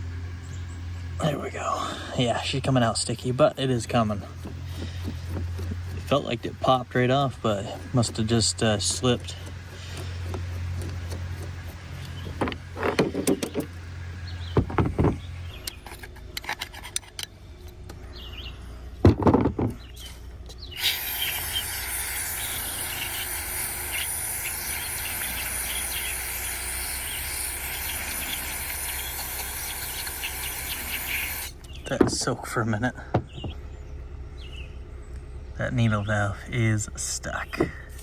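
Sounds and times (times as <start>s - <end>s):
aerosol can hissing: 20.7s - 31.6s.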